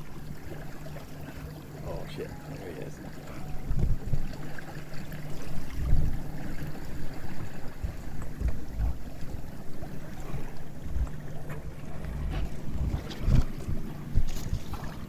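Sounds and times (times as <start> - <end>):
steady low hum: 0.0 - 15.0
water rushing along a hull: 0.0 - 15.0
wind gusting on microphone: 3.6 - 4.4, 5.4 - 9.2, 11.8 - 15.0.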